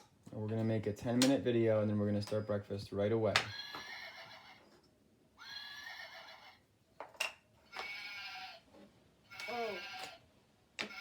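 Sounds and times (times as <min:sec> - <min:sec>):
recorded animal calls from speaker: 0:09.3 - 0:10.2
toy click: 0:09.3 - 0:10.2.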